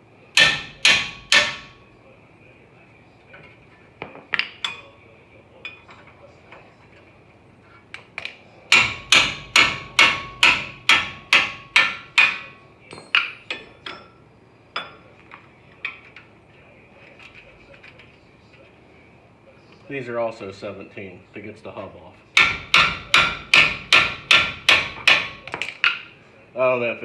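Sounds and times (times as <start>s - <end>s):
hammer blows: 0.4s - 1.9s.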